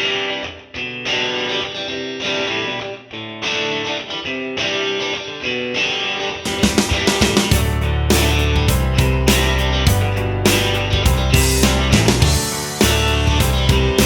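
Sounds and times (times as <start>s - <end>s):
plucked guitar music: 0.0s - 14.0s
drum hits: 6.5s - 14.0s.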